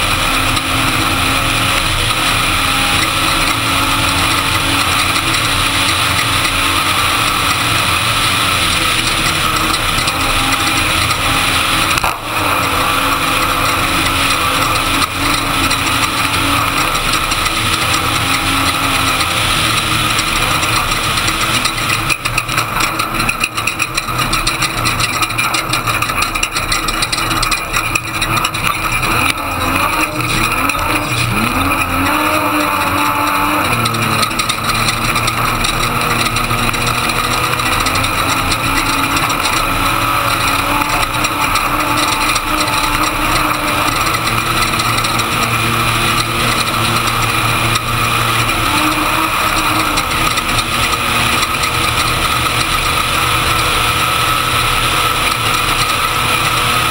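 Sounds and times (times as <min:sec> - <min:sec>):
knocks and rattles over rough ground: 0:00.0 - 0:56.9
truck engine running hard: 0:00.0 - 0:56.9
wind and road noise: 0:00.0 - 0:56.9.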